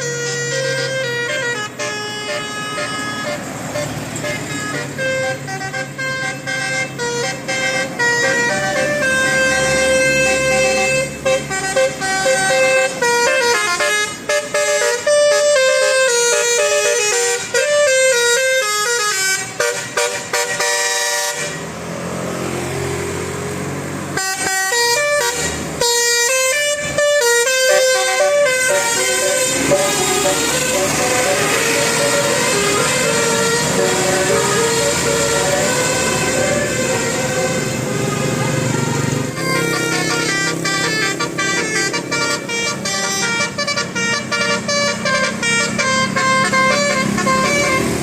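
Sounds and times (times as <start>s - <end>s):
bus musical air horn: 0.0s - 21.8s, 24.1s - 48.0s
vehicle noise: 0.0s - 48.0s.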